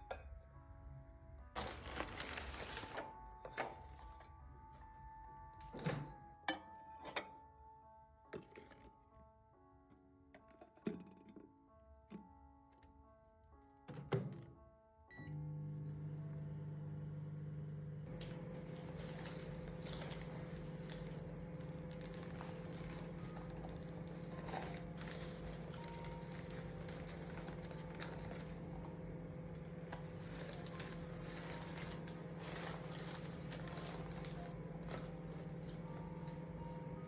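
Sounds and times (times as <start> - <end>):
mechanical hum: 15.1 - 37.0
small clicks and crackles: 30.0 - 35.4.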